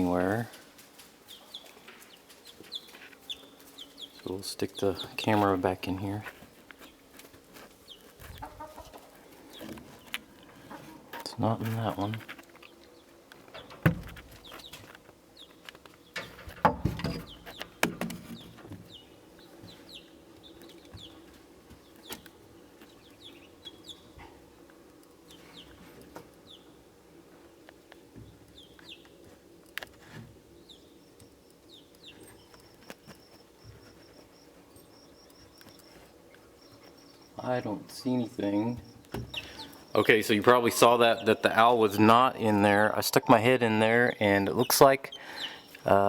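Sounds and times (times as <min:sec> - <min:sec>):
birds chirping: 0:00.0 - 0:46.0
knocks and scrapes: 0:13.4 - 0:15.1, 0:15.8 - 0:18.9.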